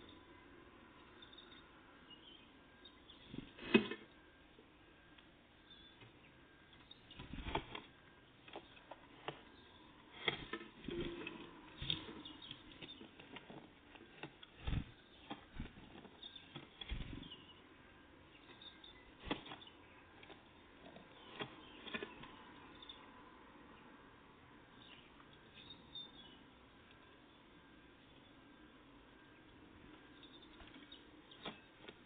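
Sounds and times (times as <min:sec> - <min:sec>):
faint high bird chirps: 0:01.0 - 0:03.5, 0:05.6 - 0:07.3, 0:16.1 - 0:20.2, 0:20.9 - 0:23.2, 0:24.7 - 0:31.8
bird wing flutters and taps: 0:14.6 - 0:17.3.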